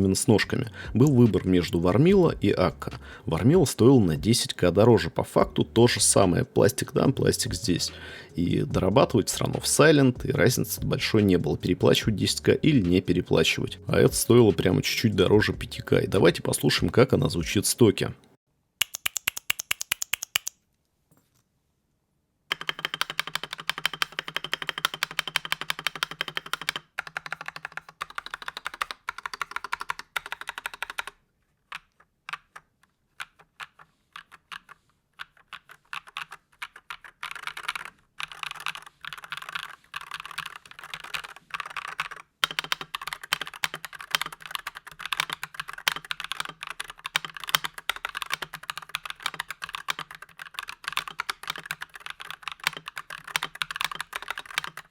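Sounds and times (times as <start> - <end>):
fast typing on mechanical keyboard: 18.8 - 20.5, 22.5 - 54.9.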